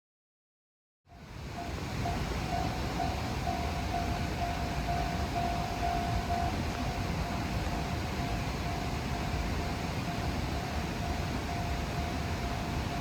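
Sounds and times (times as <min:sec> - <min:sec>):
train rumbling past: 0:01.1 - 0:13.0
level crossing bell ringing: 0:02.0 - 0:09.4.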